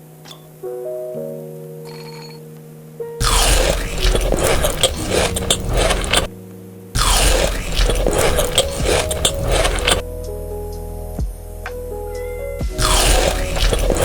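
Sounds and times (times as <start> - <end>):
loud scraping rattling noise: 3.2 - 6.3, 7.0 - 10.0, 12.8 - 14.0.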